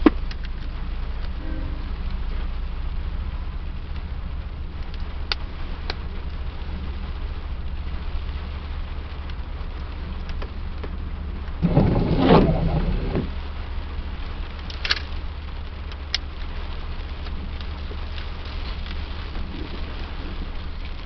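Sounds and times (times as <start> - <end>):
rain falling: 0.0 - 21.0
steady low hum: 0.0 - 21.0
loud crackling burst: 11.3 - 21.0.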